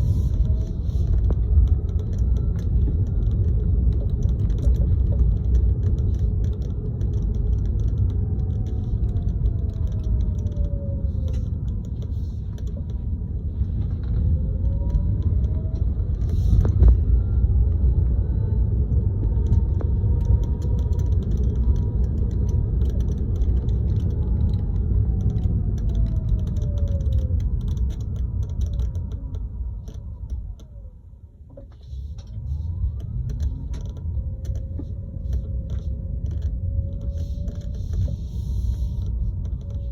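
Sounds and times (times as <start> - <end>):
road rumble: 0.0 - 39.9
faint rattling ticks: 0.3 - 16.8, 19.3 - 30.8
whine rising and falling in pitch: 12.8 - 31.0.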